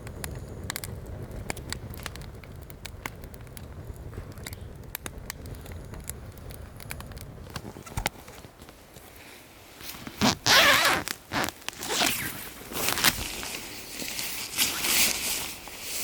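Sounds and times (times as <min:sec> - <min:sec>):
zipper rasping: 0:10.2 - 0:13.2.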